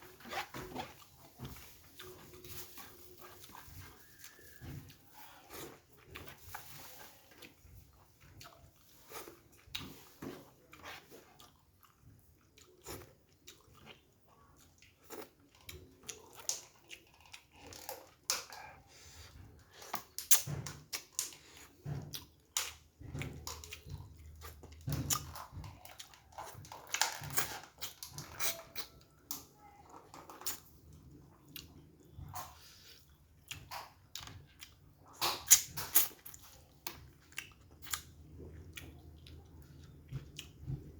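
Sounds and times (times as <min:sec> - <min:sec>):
person chewing: 0:00.0 - 0:40.9
wet mouth clicks: 0:35.2 - 0:36.1.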